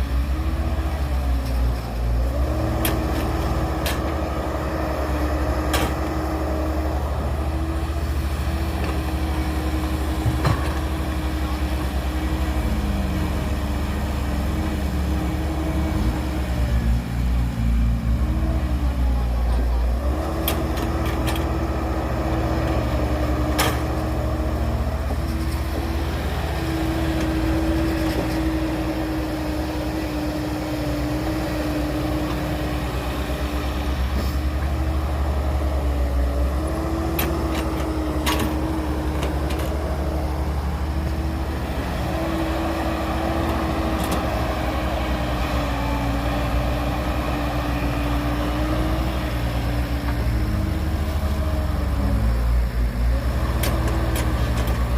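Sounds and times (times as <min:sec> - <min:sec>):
diesel engine running: 0:00.0 - 0:54.9.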